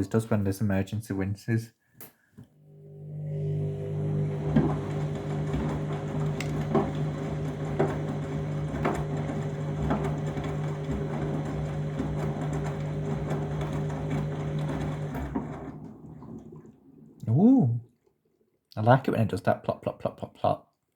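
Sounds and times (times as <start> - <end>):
washing machine motor hum: 2.6 - 17.2.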